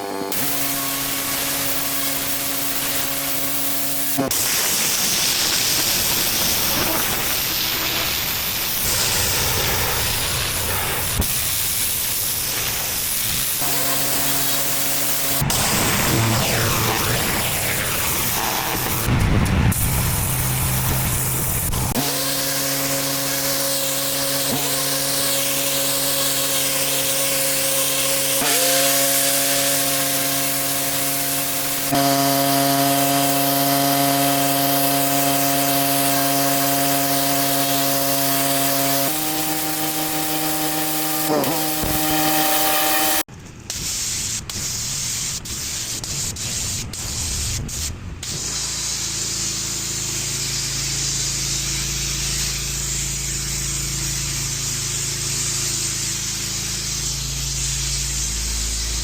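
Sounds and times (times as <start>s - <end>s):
pump engine humming: 0.0s - 43.6s
pressure washer spray hissing: 0.2s - 59.0s.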